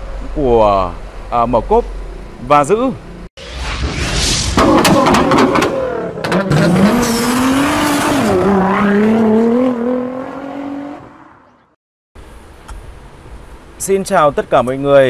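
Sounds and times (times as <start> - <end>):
car engine revving: 4.6 - 11.5.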